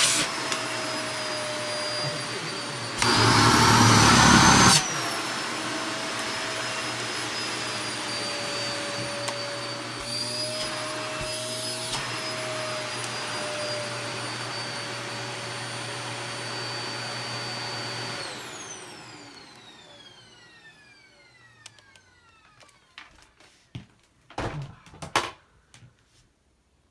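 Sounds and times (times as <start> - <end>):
vacuum motor spinning down: 0.0 - 23.0
vacuum cleaner running: 0.0 - 23.2.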